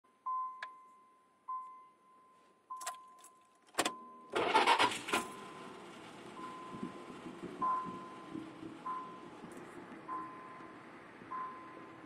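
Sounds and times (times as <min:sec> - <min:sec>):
keys clicking in ignition: 0:02.8 - 0:05.4
car engine starting and idling: 0:03.8 - 0:12.0
warning chime tones: 0:05.3 - 0:12.0.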